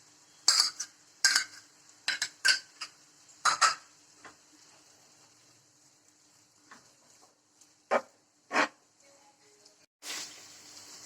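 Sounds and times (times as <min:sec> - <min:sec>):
spoon scraping against a pan: 0:00.3 - 0:03.9, 0:07.9 - 0:08.8.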